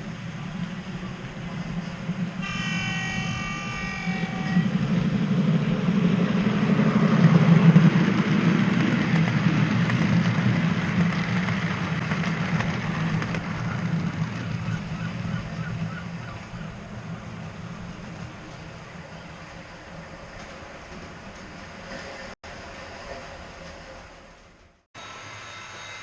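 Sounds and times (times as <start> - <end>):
train rumbling past: 0.0 - 26.0
locomotive horn: 2.4 - 4.8.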